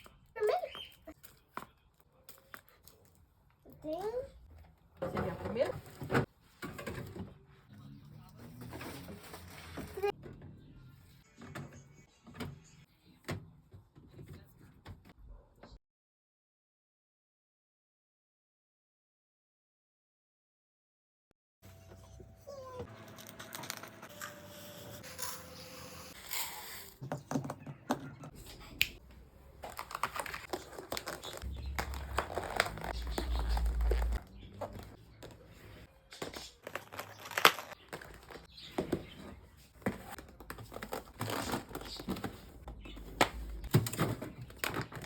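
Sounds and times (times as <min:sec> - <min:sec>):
plastic packaging crinkling: 0:29.6 - 0:34.8, 0:36.4 - 0:38.5.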